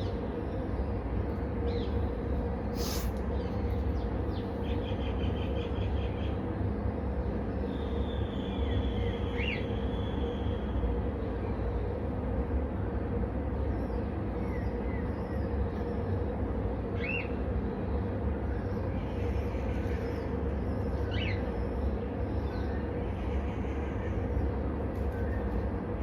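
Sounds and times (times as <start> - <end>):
faint constant hum: 0.0 - 26.0.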